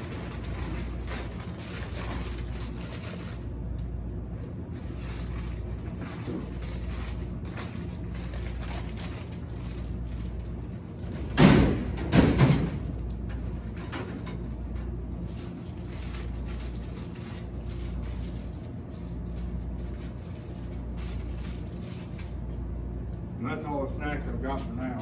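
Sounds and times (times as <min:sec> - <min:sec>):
low machine hum: 0:00.0 - 0:25.0.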